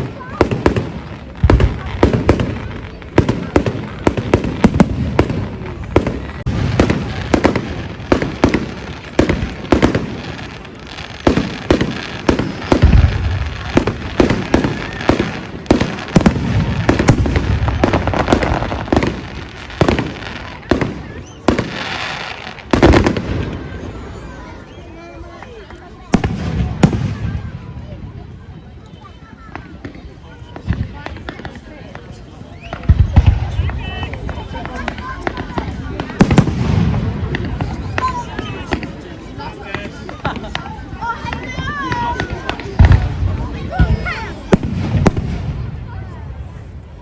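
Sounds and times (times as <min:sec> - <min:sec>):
deep fireworks booms: 0:00.0 - 0:24.7, 0:26.0 - 0:28.6, 0:29.5 - 0:47.0
fireworks bangs and crackling: 0:00.0 - 0:47.0.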